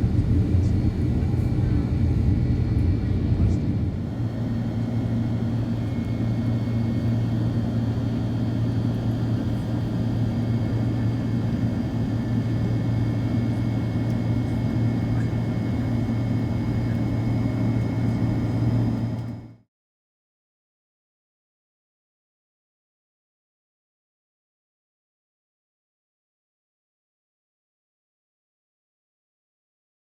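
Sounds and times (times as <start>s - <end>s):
jet engines and airflow drone: 0.0s - 19.6s.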